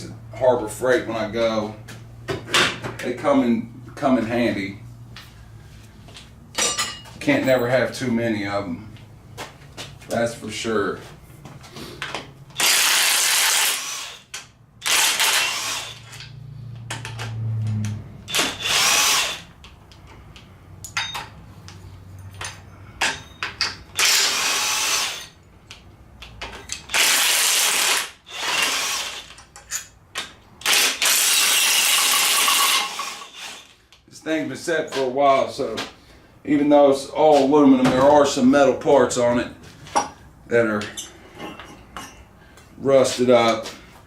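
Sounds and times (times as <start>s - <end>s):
impact wrench bursts: 12.1s - 17.4s, 18.2s - 19.6s, 23.0s - 25.4s, 26.6s - 33.9s.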